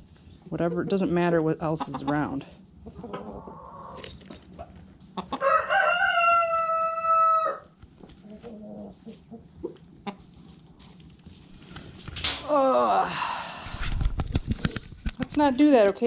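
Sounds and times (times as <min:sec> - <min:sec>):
hens clucking: 0:00.6 - 0:11.0
rooster crowing: 0:05.3 - 0:07.8.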